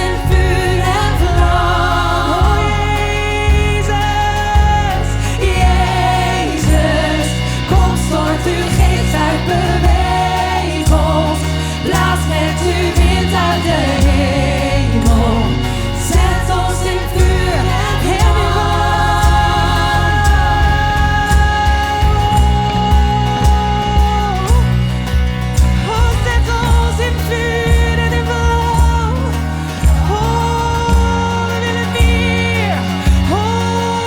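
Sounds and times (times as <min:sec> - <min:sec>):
person singing wavering runs: 0:00.0 - 0:24.8
live worship band music: 0:00.0 - 0:34.0.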